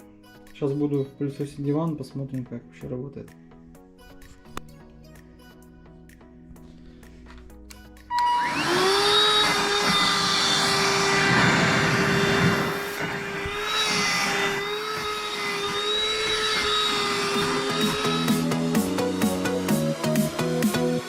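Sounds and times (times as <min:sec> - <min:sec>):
handheld vacuum cleaner running: 0:08.1 - 0:21.0.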